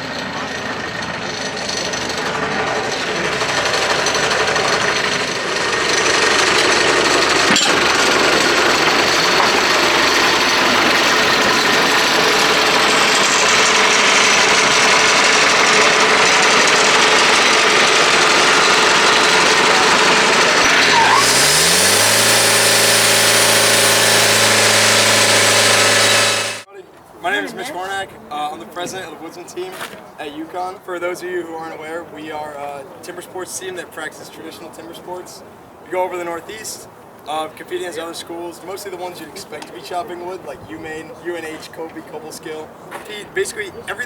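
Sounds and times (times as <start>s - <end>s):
engine-driven machinery running: 0.0s - 26.7s
motor winding up and humming: 0.2s - 26.6s.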